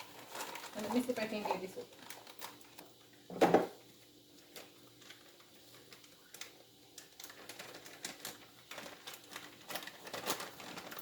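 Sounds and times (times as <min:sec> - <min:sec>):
package clicks and crinkles: 0:02.0 - 0:03.0, 0:04.4 - 0:11.0.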